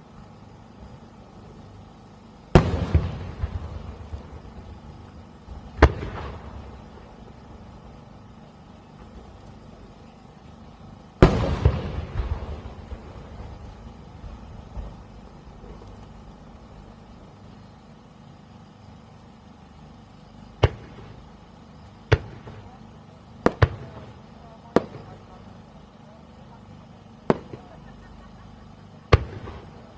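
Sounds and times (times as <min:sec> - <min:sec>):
fireworks bursting: 0:00.0 - 0:29.9.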